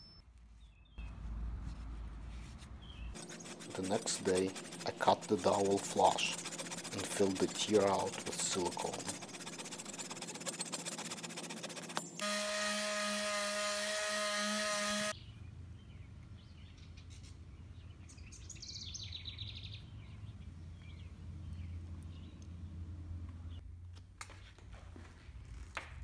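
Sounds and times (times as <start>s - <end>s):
scraping on wood: 1.6s - 15.1s
birds chirping: 2.3s - 9.2s, 14.9s - 22.6s
power tool whining: 3.2s - 15.2s.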